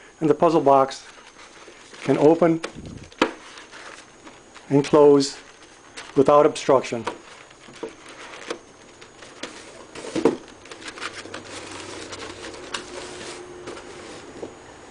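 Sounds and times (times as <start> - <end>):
cardstock taps and rustles: 2.0 - 5.0.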